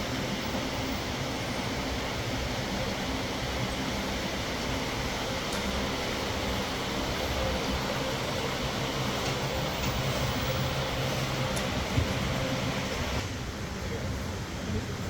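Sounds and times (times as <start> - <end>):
machine-like rushing noise: 0.0 - 13.4.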